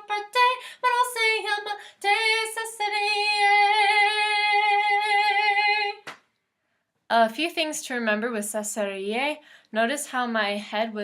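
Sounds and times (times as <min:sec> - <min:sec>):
woman singing unaccompanied: 0:00.0 - 0:06.0.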